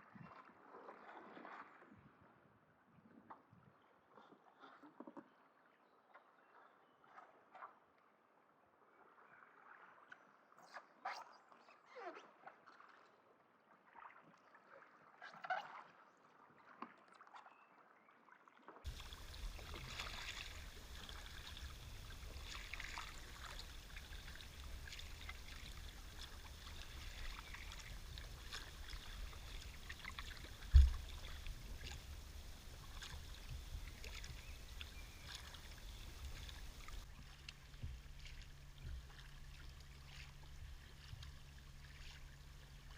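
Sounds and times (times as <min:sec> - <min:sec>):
paddle splashes: 0:00.2 - 0:02.0, 0:18.9 - 0:42.9
faint chirps: 0:18.9 - 0:37.0
low rumble: 0:18.9 - 0:42.4
water washing around kayak: 0:18.9 - 0:42.9.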